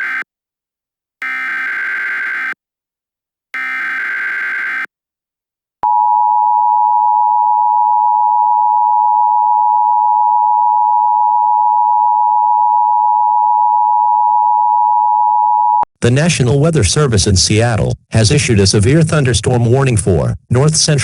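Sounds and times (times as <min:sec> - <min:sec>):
harsh electronic warble: 0:00.0 - 0:00.2, 0:01.2 - 0:02.6, 0:03.6 - 0:04.9.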